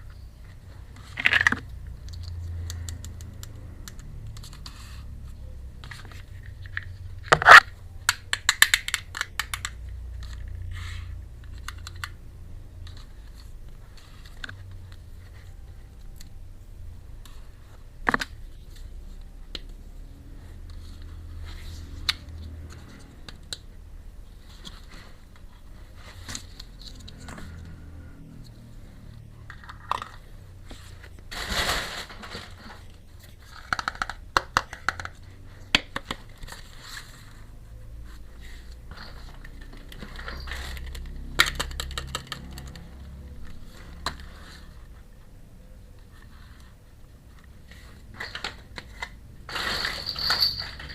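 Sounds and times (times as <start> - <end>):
small metal pieces clinking: 49.5 - 50.9.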